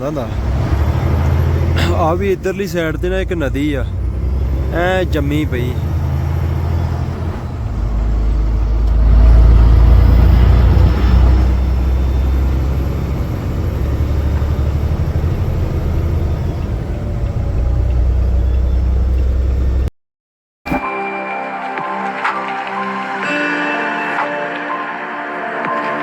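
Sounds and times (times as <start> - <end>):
truck engine and road drone: 0.0 - 19.9.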